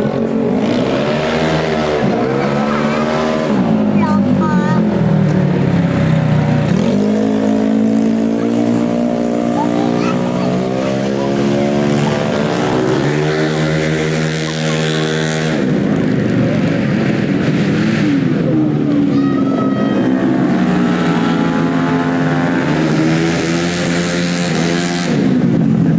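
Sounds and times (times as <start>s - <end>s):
scooter engines at high revs: 0.0s - 25.9s.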